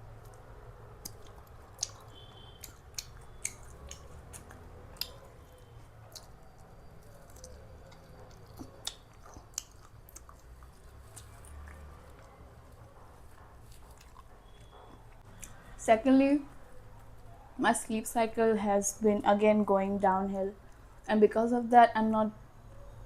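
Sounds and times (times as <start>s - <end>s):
person chewing: 1.0s - 15.6s.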